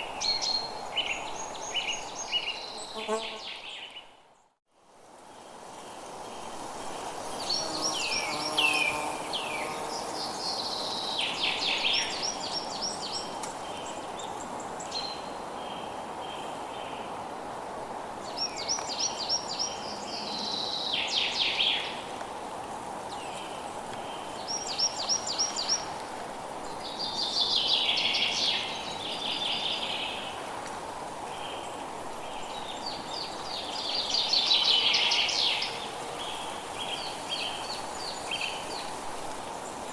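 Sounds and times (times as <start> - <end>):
faint insect drone: 5.0 - 12.6.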